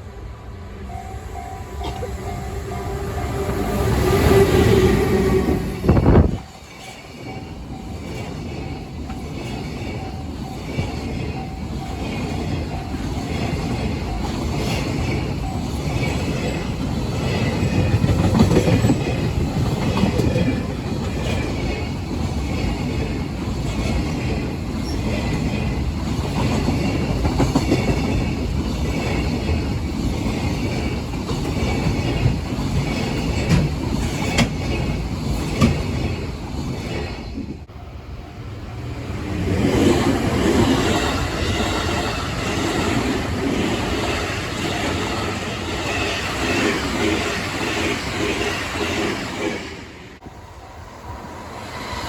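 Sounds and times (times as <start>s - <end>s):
train wheels clattering over rails: 3.0s - 37.6s.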